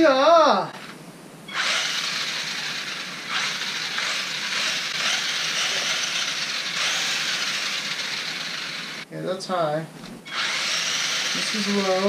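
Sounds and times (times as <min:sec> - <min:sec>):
electric toy motor whirring: 0:01.5 - 0:09.1, 0:10.3 - 0:12.0.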